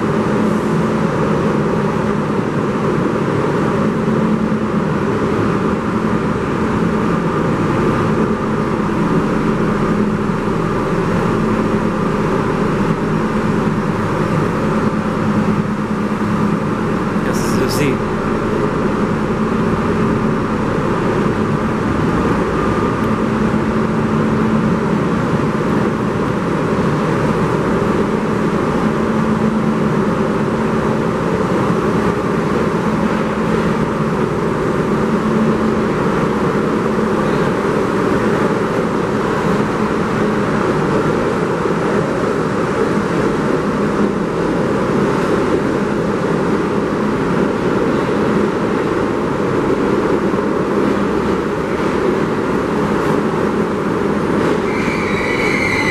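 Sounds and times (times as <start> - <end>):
subway train rumbling at speed: 0.0 - 55.9
faint low hum: 4.2 - 40.0.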